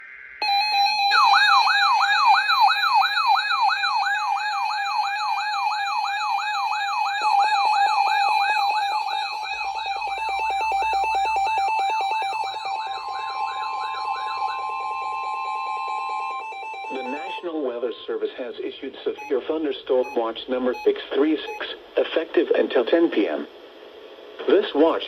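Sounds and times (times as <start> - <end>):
weather radio alarm whoop: 0.4 - 17.5
steady high tone: 0.4 - 21.6
screech of data tones: 4.0 - 17.5, 19.2 - 21.8.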